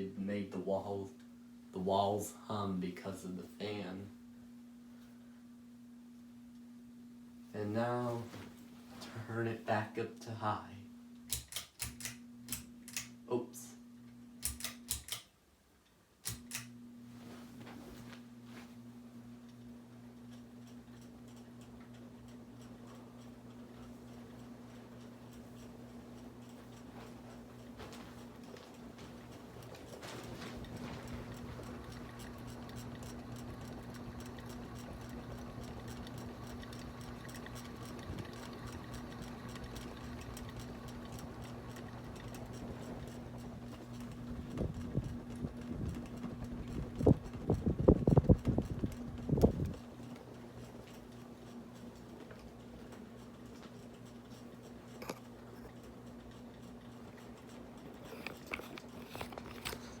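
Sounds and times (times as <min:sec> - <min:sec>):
ceiling fan motor humming: 0:00.0 - 1:00.0
fast faint ticking: 0:20.2 - 0:59.0.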